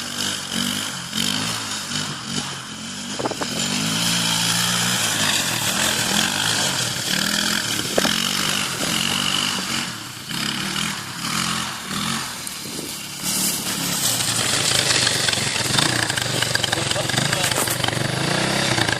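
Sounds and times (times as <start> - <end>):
quad bike engine revving: 0.0 - 18.9.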